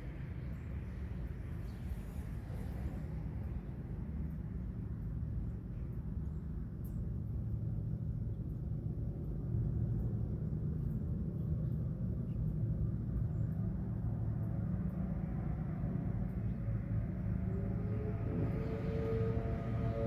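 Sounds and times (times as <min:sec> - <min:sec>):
low rumble with hum: 0:00.0 - 0:20.0
distant warning sirens: 0:12.6 - 0:20.0.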